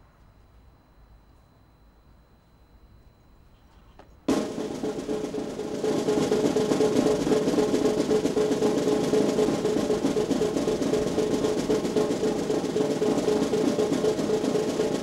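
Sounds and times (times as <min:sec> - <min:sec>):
military band held notes: 0:04.3 - 0:15.0
snare drum rolls: 0:04.3 - 0:15.0.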